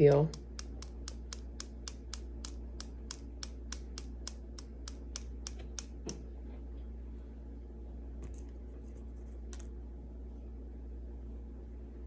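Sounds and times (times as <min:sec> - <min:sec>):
fingernail flicking plastic syringe: 0:00.0 - 0:06.2.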